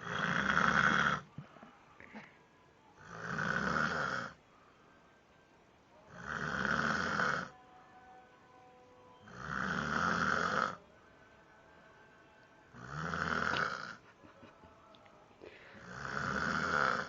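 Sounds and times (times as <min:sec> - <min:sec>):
person snoring: 0:00.0 - 0:01.3, 0:03.0 - 0:04.4, 0:06.1 - 0:07.6, 0:09.2 - 0:10.8, 0:12.7 - 0:14.0, 0:15.4 - 0:17.0.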